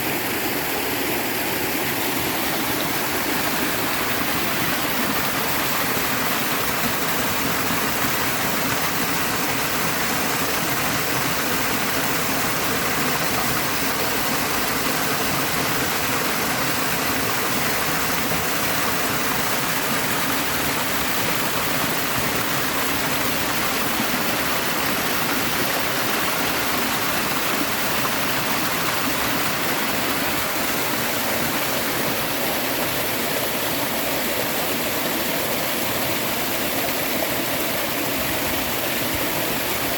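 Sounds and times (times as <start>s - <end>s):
river and waterfall rushing: 0.0s - 39.9s.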